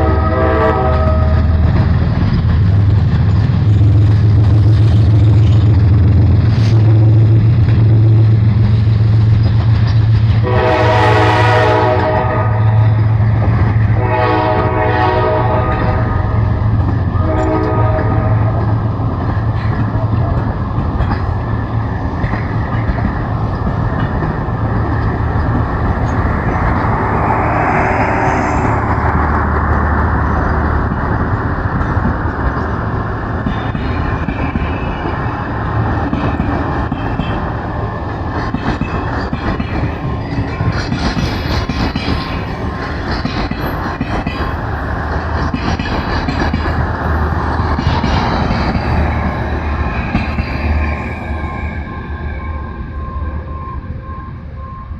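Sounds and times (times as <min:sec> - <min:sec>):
locomotive horn: 0:00.0 - 0:01.6, 0:10.4 - 0:13.0, 0:13.9 - 0:16.4, 0:17.1 - 0:18.7
diesel locomotive engine drone: 0:00.0 - 0:54.9
rushing noise: 0:18.3 - 0:54.4.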